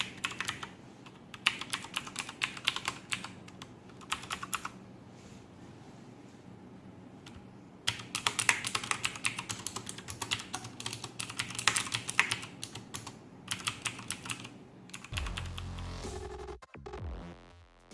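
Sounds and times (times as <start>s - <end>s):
clicky keyboard typing: 0.0s - 4.8s, 7.2s - 15.5s
air conditioner hum: 0.0s - 16.0s
music: 15.2s - 17.9s.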